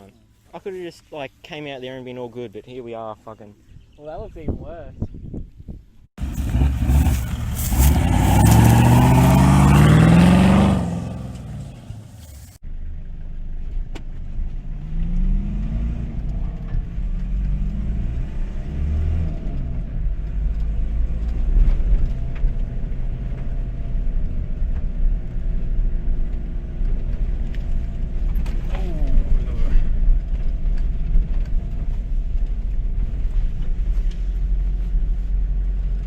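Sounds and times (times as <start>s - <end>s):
car engine revving off-road: 6.2s - 36.0s.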